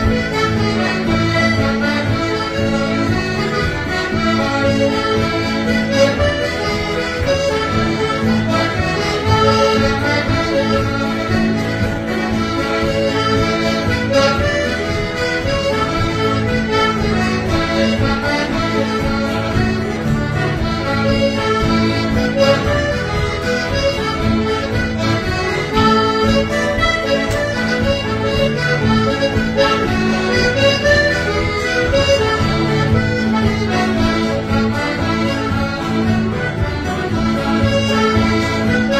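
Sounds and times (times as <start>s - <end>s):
accordion playing traditional tune: 0.0s - 38.9s.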